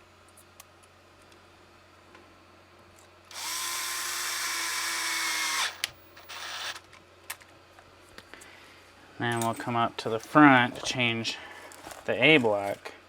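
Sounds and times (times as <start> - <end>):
power drill running: 3.3 - 6.9.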